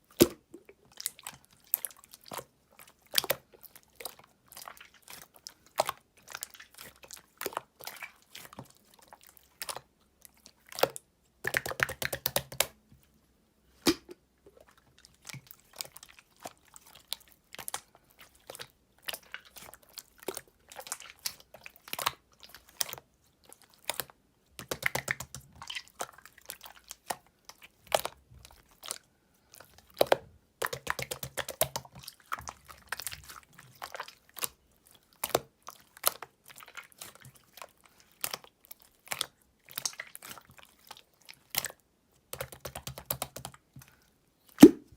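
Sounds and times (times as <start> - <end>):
slime clicking and popping: 10.8 - 12.7.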